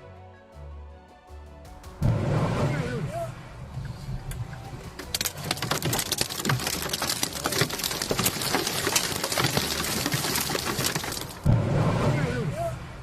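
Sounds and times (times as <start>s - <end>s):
water spattering on surfaces: 4.9s - 11.5s.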